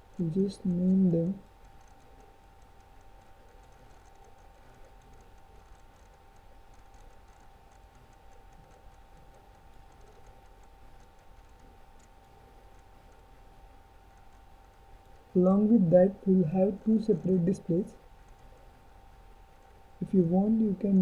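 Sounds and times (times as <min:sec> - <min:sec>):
faint electrical hum: 0:00.0 - 0:21.0
writing strokes ticking: 0:00.0 - 0:21.0.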